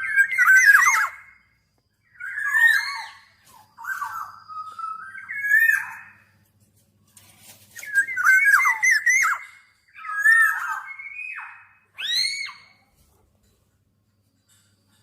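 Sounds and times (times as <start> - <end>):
bird whistling fluty notes: 0.0 - 6.4, 7.8 - 12.8.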